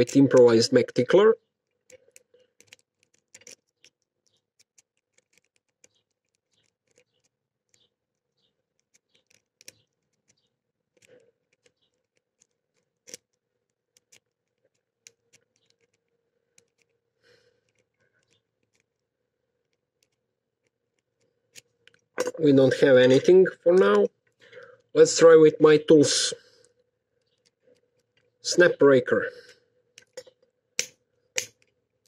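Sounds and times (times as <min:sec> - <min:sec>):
lock pick clicking in padlock: 0:01.6 - 0:16.9, 0:29.9 - 0:31.7.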